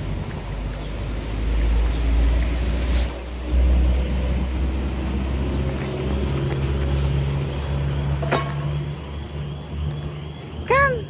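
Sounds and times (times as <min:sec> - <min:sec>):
low engine hum: 0:00.0 - 0:11.0.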